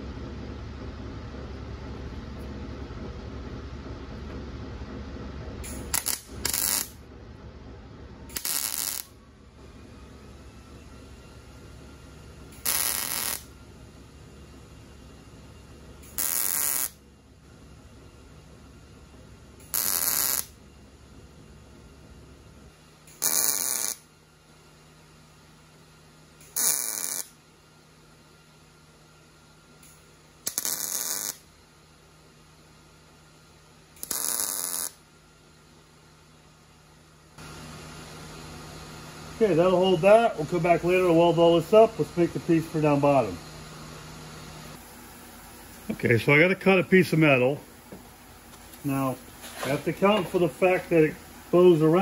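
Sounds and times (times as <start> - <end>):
low steady hum: 0.0 - 52.0
welding crackling bursts: 5.7 - 7.0, 8.3 - 9.2, 12.6 - 13.5, 16.0 - 17.0, 19.6 - 20.5, 23.1 - 24.0, 26.4 - 27.3, 30.4 - 31.4, 34.0 - 35.0.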